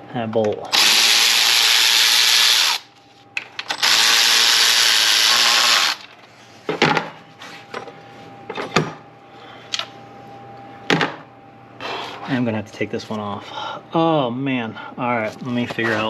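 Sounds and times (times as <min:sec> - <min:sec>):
handheld power tool running: 0:00.7 - 0:02.9, 0:03.7 - 0:06.1.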